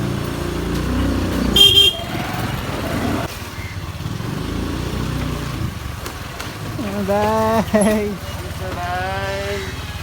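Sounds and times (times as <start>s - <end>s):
scooter engine running: 0.0s - 10.0s
street traffic: 0.0s - 10.0s
high-pitched horn beep: 1.5s - 2.2s.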